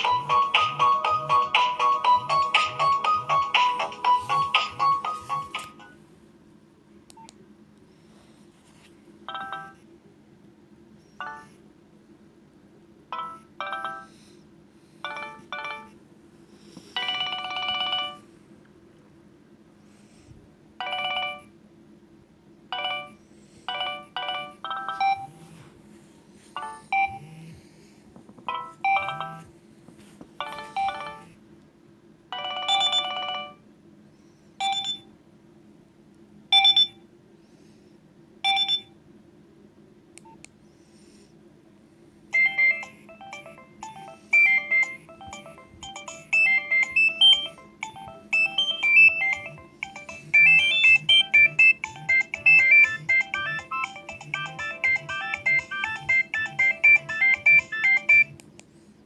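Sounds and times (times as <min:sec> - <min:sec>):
polyphonic phone ringtone: 0:00.0 - 0:06.0, 0:09.3 - 0:09.8, 0:11.2 - 0:11.6, 0:13.1 - 0:14.2, 0:15.1 - 0:16.0, 0:17.0 - 0:18.3, 0:20.8 - 0:21.5, 0:22.7 - 0:25.6, 0:26.6 - 0:27.4, 0:28.5 - 0:29.5, 0:30.4 - 0:31.4, 0:32.3 - 0:33.6, 0:42.3 - 0:58.4.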